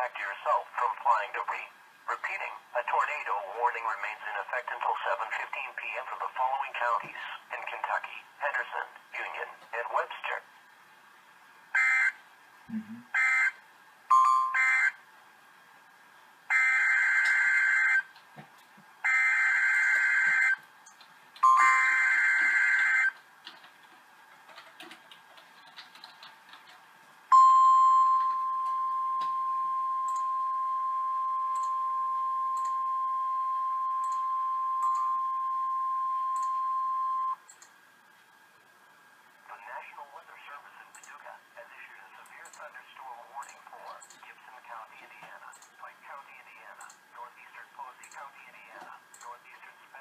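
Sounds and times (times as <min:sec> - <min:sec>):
steady warning alarm tone: 0:11.8 - 0:12.2, 0:13.2 - 0:15.0, 0:16.5 - 0:18.1, 0:19.0 - 0:20.6, 0:21.4 - 0:23.2, 0:27.3 - 0:37.4.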